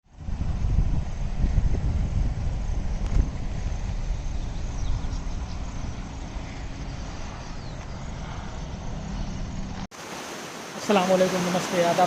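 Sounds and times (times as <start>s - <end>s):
low rumble of road traffic: 0.0s - 10.0s
vehicle going by: 0.3s - 9.9s.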